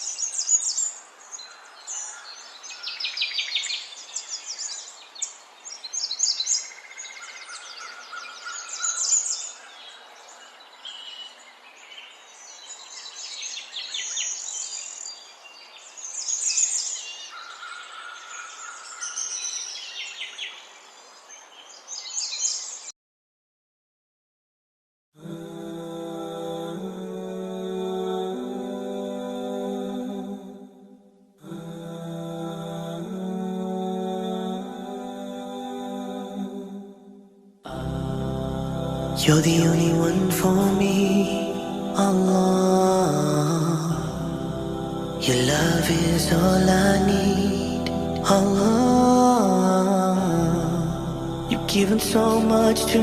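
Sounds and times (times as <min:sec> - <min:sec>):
birds chirping and singing: 0:00.0 - 0:22.9
steady background hiss: 0:00.0 - 0:22.9, 0:37.7 - 0:53.0.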